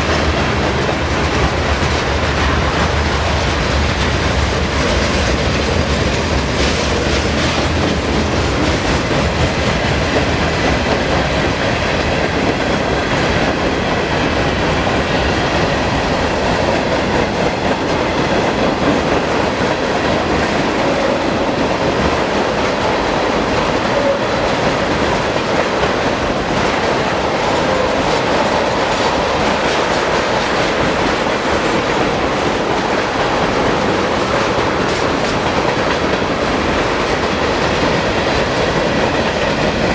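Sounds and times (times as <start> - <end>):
train wheels rumbling on track: 0.0 - 39.9.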